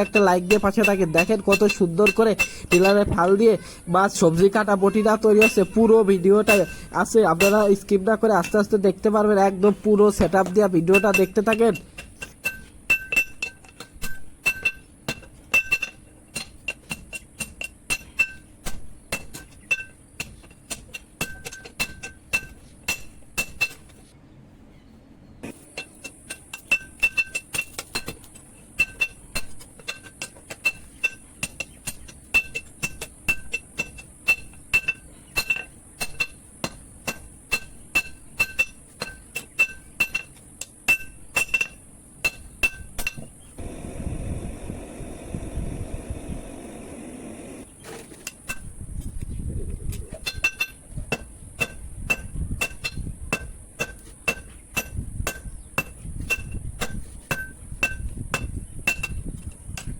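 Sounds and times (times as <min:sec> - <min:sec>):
hammer ringing on anvil: 0:00.0 - 0:03.4, 0:05.4 - 0:08.7, 0:10.8 - 0:14.9.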